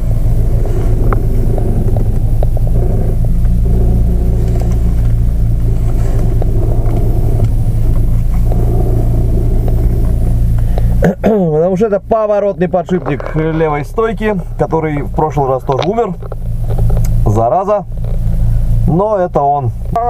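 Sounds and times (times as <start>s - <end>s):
car engine idling: 0.0s - 20.0s
suspension creaking and clicking: 0.0s - 20.0s.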